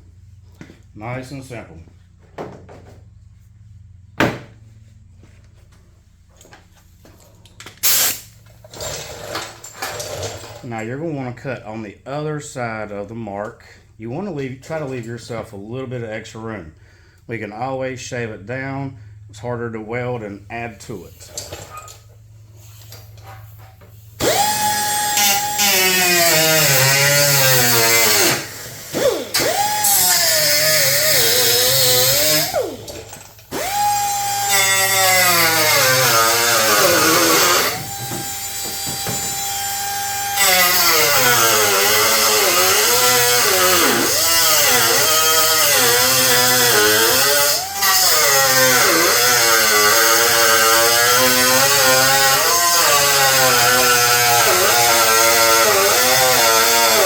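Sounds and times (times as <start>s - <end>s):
cutoff wheel cutting sheet steel: 24.2s - 57.0s.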